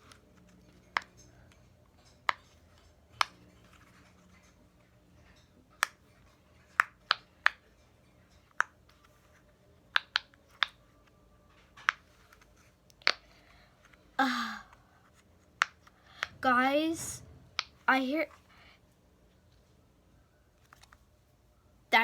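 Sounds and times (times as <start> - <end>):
fidget toy clicks and taps: 0.0 - 3.4, 5.7 - 9.0, 9.9 - 10.8, 11.8 - 14.0, 15.5 - 16.4, 17.5 - 17.8.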